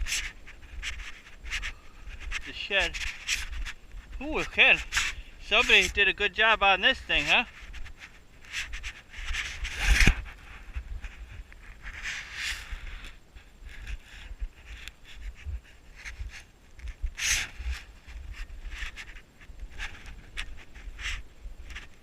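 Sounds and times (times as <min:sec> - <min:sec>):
footsteps in deep snow: 0:07.2 - 0:21.8.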